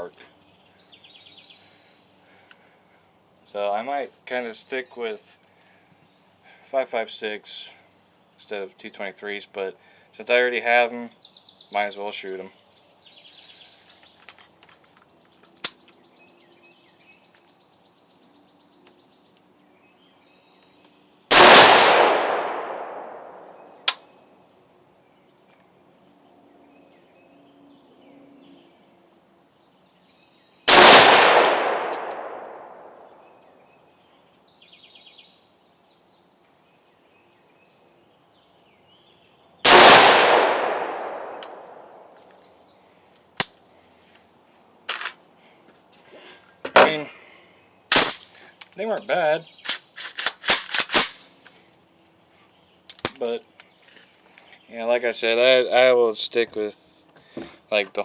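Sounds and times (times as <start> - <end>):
rifle shots ringing out: 21.3 - 23.7, 30.7 - 33.1, 39.6 - 42.0.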